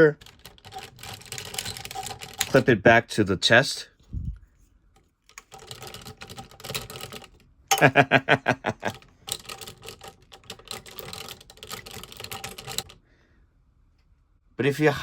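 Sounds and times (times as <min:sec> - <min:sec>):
plastic toy parts clicking and rattling: 0:00.0 - 0:02.7, 0:05.0 - 0:13.0.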